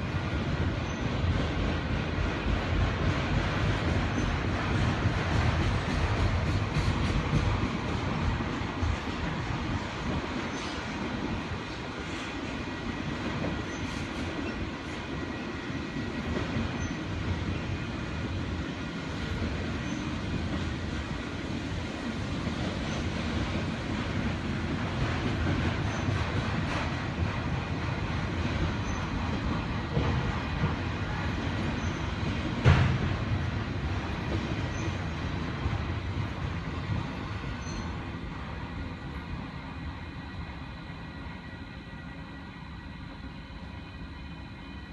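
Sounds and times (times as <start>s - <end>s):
train wheels rumbling on rail: 0.0s - 44.9s
faint wheel squeal: 37.6s - 38.0s.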